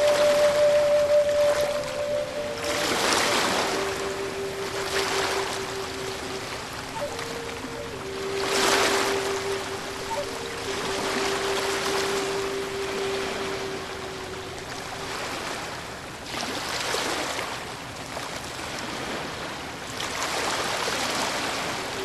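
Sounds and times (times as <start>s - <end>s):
steady held tone: 0.0s - 15.9s
ocean waves breaking: 0.0s - 22.0s.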